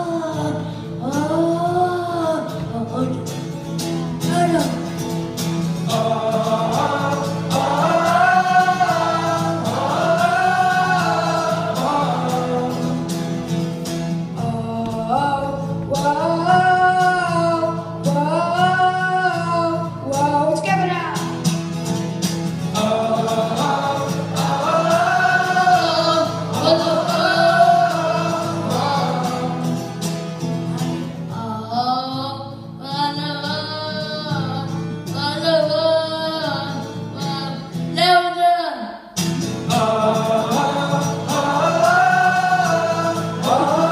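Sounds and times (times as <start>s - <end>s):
voices singing together: 5.6s - 13.5s, 22.6s - 32.0s, 39.5s - 43.9s.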